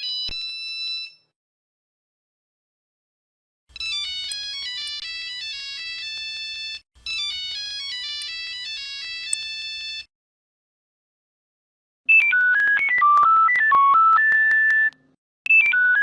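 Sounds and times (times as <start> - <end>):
mobile phone ringtone melody: 0.0 - 1.3, 3.8 - 10.1, 12.1 - 14.9, 15.5 - 16.0.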